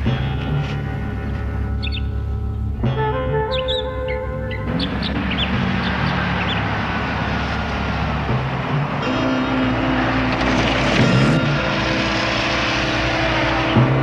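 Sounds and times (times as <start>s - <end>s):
vehicle engine running: 3.8s - 14.0s.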